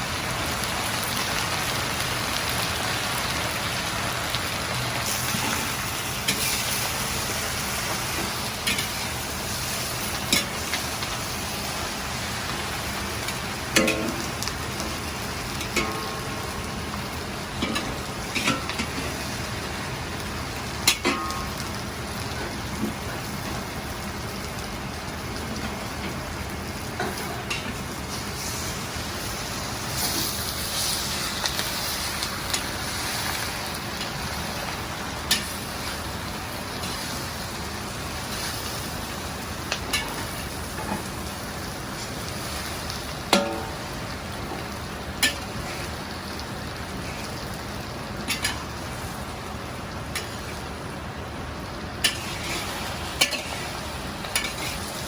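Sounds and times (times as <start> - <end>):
chicken sizzling in a wok: 0.0 - 55.0
metal ladle clanking on wok: 13.7 - 14.4, 15.6 - 16.5, 20.8 - 21.6, 43.3 - 43.9, 48.3 - 48.7, 52.0 - 53.7, 54.3 - 54.9.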